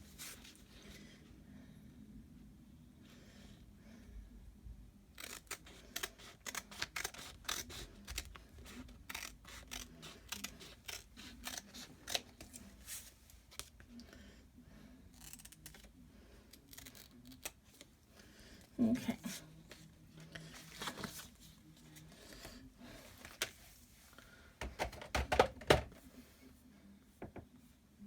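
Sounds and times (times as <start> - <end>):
scissors snipping plastic sheet: 5.2 - 12.6.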